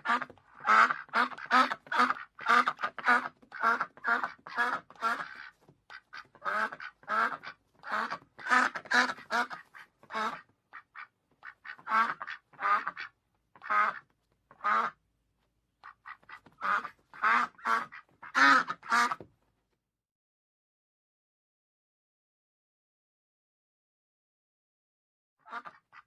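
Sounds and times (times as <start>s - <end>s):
duck quacking: 0.0s - 15.0s, 15.8s - 19.3s, 25.4s - 26.0s.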